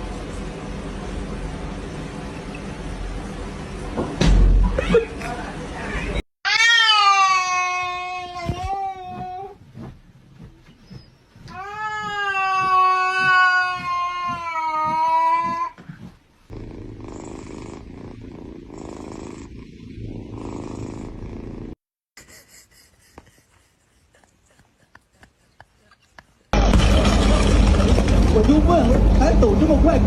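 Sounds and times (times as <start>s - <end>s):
cat meowing: 6.5s - 9.2s
cat purring: 16.5s - 21.8s.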